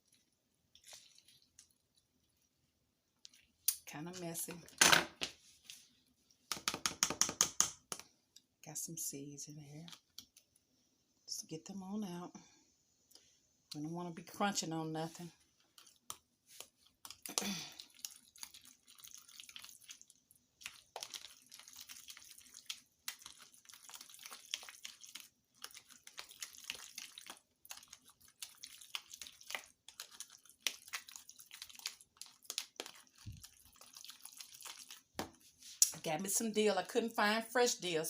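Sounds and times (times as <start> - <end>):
juice dripping and splashing: 0.0 - 3.9, 15.4 - 36.0.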